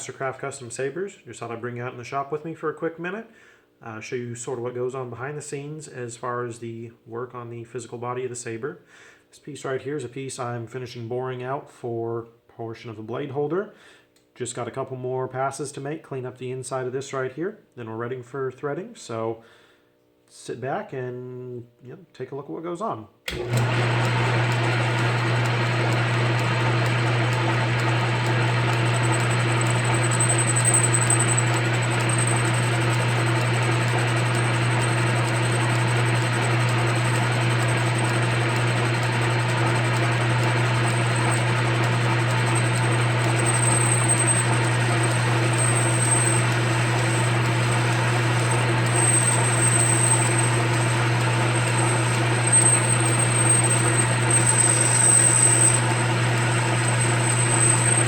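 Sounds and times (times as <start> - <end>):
metal lathe running: 23.3 - 58.0.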